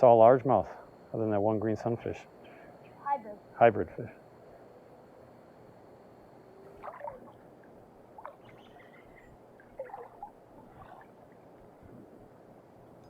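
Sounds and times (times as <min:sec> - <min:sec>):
faint creek water wash: 0:06.8 - 0:07.5, 0:08.1 - 0:11.6
water splashing and sloshing: 0:06.8 - 0:12.2.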